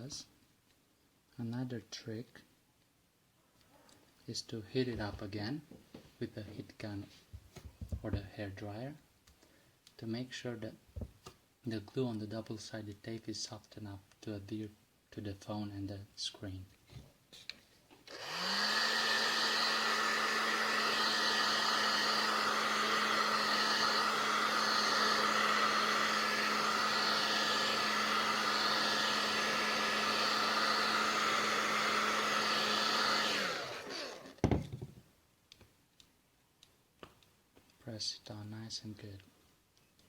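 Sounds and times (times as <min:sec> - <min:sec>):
knock: 0:07.6 - 0:08.2, 0:11.0 - 0:11.2, 0:34.4 - 0:35.1
hot-air blower blowing: 0:18.1 - 0:34.6.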